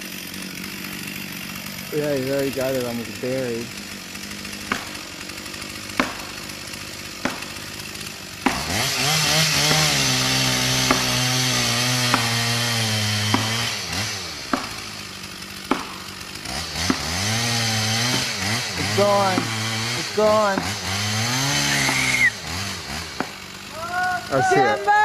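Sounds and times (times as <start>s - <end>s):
chainsaw revving: 0.0s - 25.0s
maul striking felling wedges: 4.5s - 18.6s, 20.4s - 22.3s.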